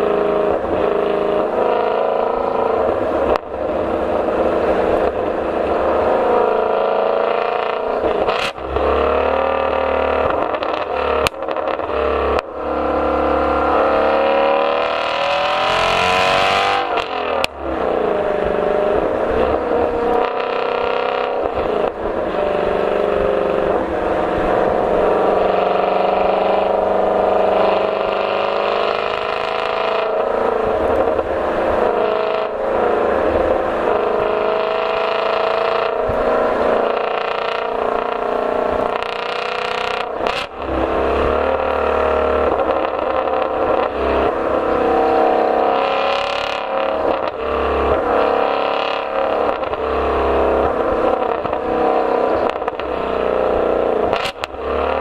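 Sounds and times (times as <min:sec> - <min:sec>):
car engine revving hard: 0:00.0 - 0:55.0
sharp exhaust cracks: 0:22.9 - 0:55.0.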